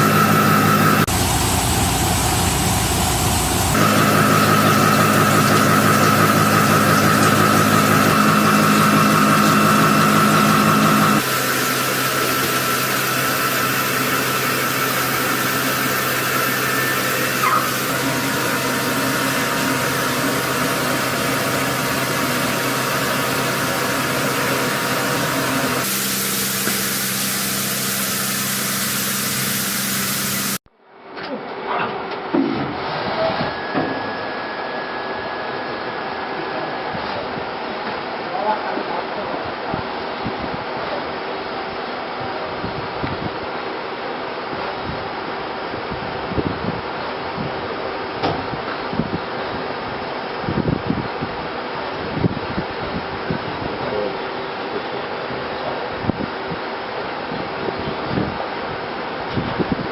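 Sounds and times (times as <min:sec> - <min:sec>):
motor hum with tones: 0:00.0 - 0:30.6.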